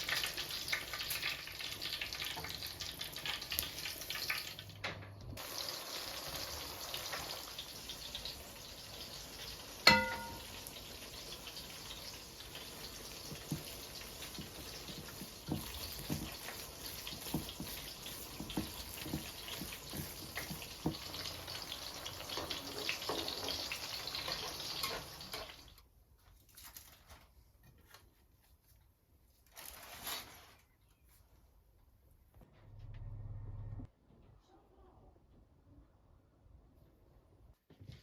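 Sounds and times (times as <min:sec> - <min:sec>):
water running from tap: 0:05.4 - 0:25.7
clinks of things being rinsed: 0:09.8 - 0:10.6, 0:22.2 - 0:25.7.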